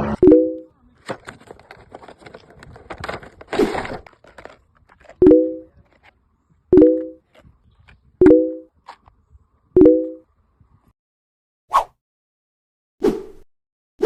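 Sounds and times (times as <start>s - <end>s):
packaging crinkling and rustling: 1.0s - 6.2s.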